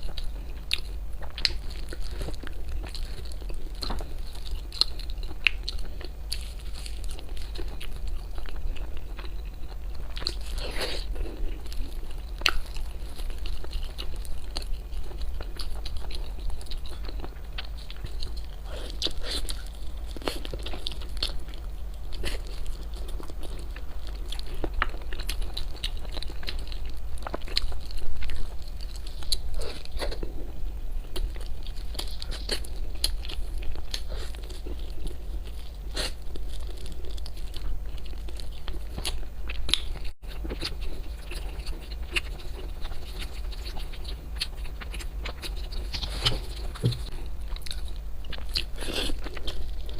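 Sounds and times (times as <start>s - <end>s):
steady low hum: 0.0s - 49.9s
crunchy bites and chewing: 31.1s - 49.9s.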